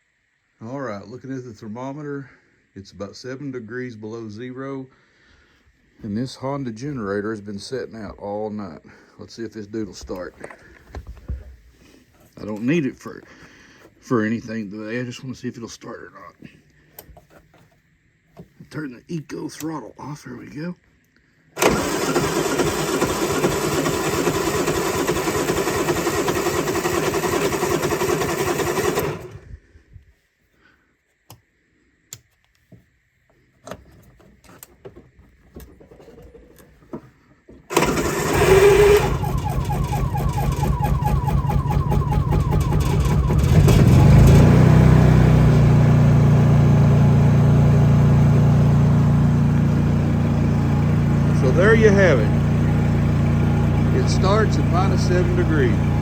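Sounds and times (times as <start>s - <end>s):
generator engine starting and running: 21.6s - 29.7s, 37.5s - 56.0s.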